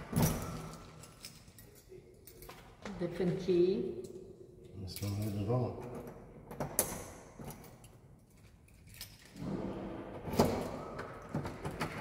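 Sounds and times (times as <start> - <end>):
keys jangling in door lock: 0.0 - 2.9, 4.9 - 9.4.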